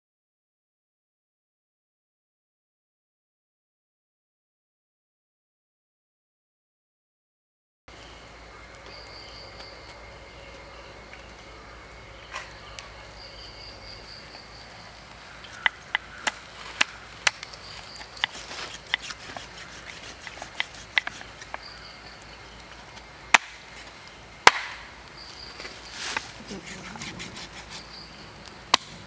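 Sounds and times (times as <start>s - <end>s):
blade chopping on wood: 18.1s - 21.6s, 23.3s - 23.6s, 24.5s - 24.8s.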